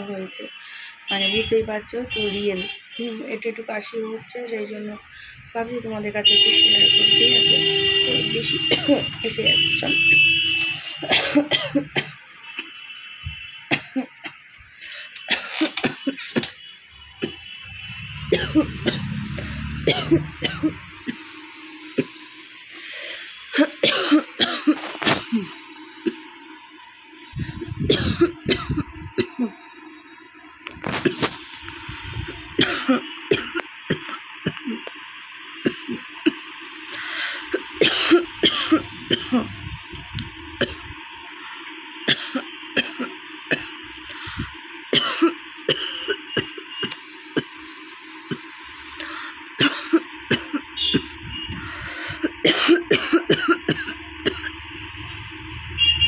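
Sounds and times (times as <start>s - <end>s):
woman coughing: 6.6s - 10.0s, 11.0s - 12.7s, 13.7s - 14.1s, 15.3s - 16.5s, 18.3s - 19.1s, 19.9s - 21.2s, 23.6s - 25.5s, 27.7s - 29.6s, 32.6s - 34.8s, 37.5s - 39.5s, 40.6s - 40.9s, 42.1s - 43.7s, 45.0s - 47.0s, 49.6s - 51.1s, 52.2s - 54.5s.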